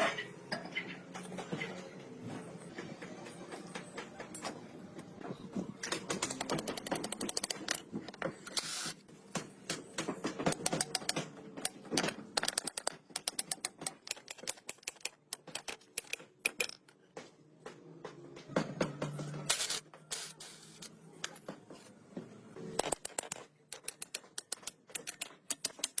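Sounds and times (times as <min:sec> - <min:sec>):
rapid clicking and tapping: 0:05.8 - 0:08.4, 0:09.6 - 0:17.3, 0:22.8 - 0:26.0.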